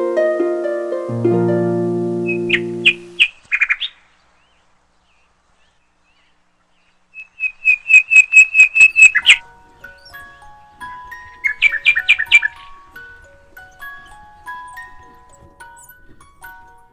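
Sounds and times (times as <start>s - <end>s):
harp notes: 0.0s - 3.2s, 9.2s - 16.9s
small bird chirping: 2.2s - 16.9s.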